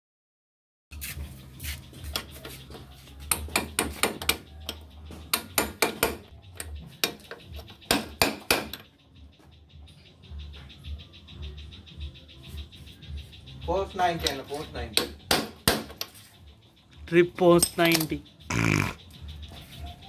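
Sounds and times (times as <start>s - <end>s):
hammer striking metal: 7.8s - 8.9s, 15.0s - 16.1s.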